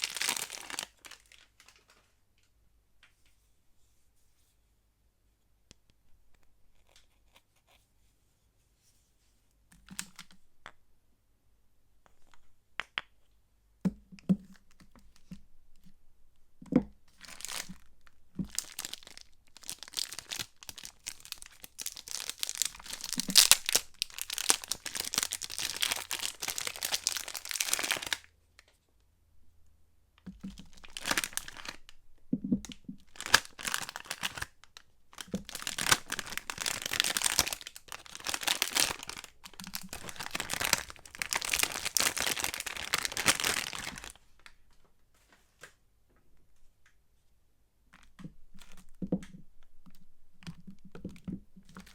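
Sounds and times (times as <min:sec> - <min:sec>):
wrapping tearing and crinkling: 0:00.0 - 0:02.1, 0:17.1 - 0:28.3, 0:30.3 - 0:31.9, 0:32.7 - 0:44.5, 0:50.4 - 0:51.9.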